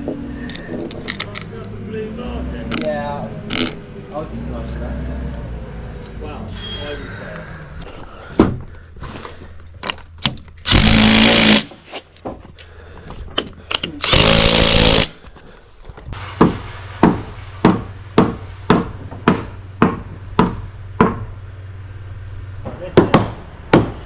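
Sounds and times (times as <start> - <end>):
hammer drill boring: 3.5 - 3.8, 10.7 - 11.7, 14.0 - 15.1.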